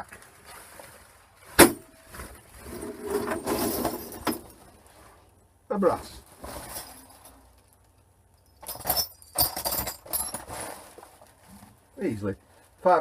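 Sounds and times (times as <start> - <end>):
scrap brass clinking in a sack: 2.1 - 5.2, 6.2 - 7.8, 8.4 - 11.4.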